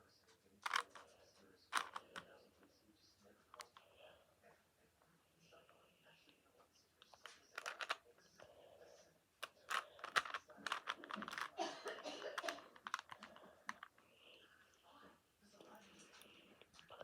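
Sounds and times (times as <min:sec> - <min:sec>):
puzzle cube clicking and rattling: 0:00.6 - 0:01.1, 0:01.7 - 0:02.3, 0:07.6 - 0:08.0, 0:09.4 - 0:14.0.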